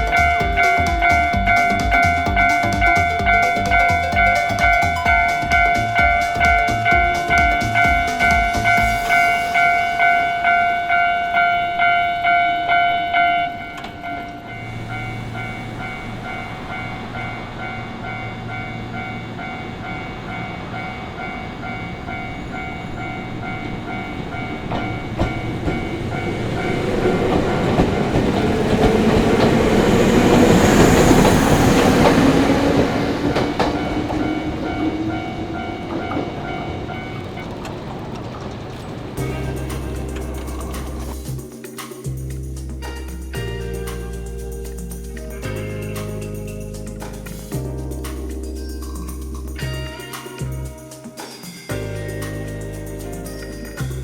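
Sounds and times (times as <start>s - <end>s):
train wheel clatter: 0.0s - 42.1s
railway crossing bell ringing: 0.0s - 47.6s, 48.3s - 54.0s
electric train passing: 0.0s - 54.0s.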